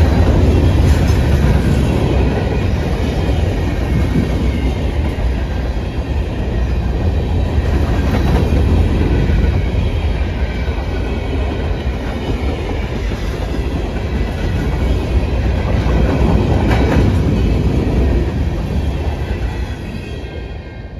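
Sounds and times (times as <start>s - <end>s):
train wheels rumbling on rail: 0.0s - 20.9s
clacks over rail joints: 15.6s - 17.9s.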